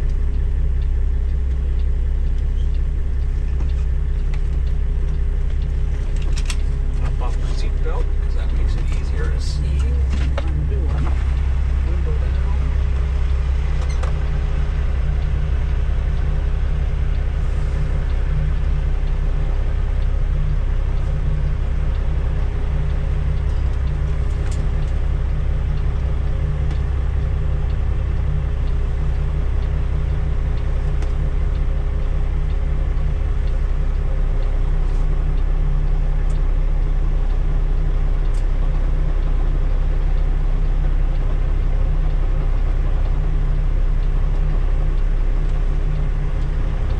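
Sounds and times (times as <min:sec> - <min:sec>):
diesel truck engine rumbling: 0:00.0 - 0:46.9
faint steady hum: 0:00.0 - 0:46.9.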